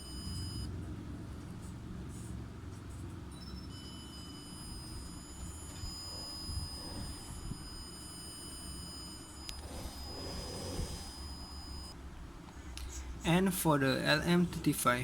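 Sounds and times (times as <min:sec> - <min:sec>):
high-pitched buzzer tone: 0:03.4 - 0:12.0.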